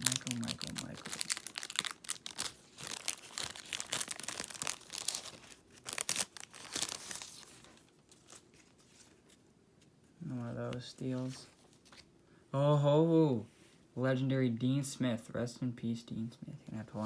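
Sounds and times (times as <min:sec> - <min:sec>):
wrapper tearing and crinkling: 0:00.0 - 0:08.6.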